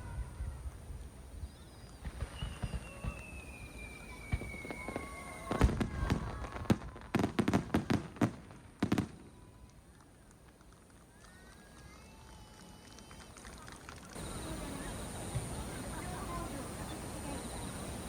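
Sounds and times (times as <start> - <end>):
firework bangs and crackles: 0.2 - 18.0
firework whistle sliding down: 2.2 - 6.2.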